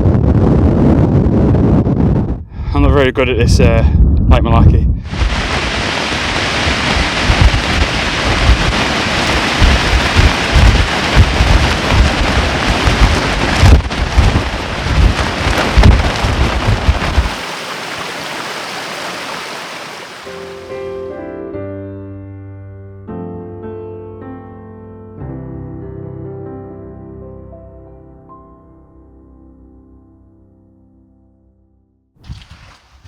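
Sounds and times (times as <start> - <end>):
wind buffeting microphone: 0.0 - 19.8, 32.2 - 33.0
heavy rain hissing: 5.1 - 20.9.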